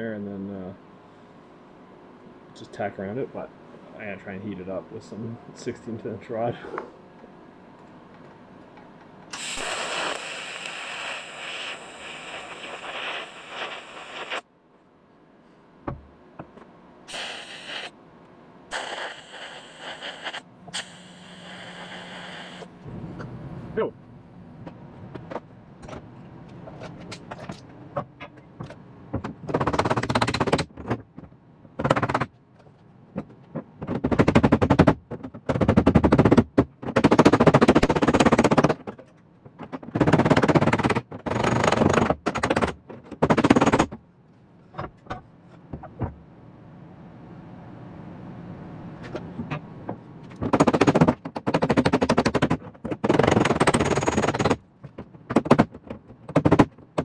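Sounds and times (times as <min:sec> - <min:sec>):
welding arc crackling: 0:09.3 - 0:14.4, 0:17.1 - 0:17.9, 0:18.7 - 0:22.8.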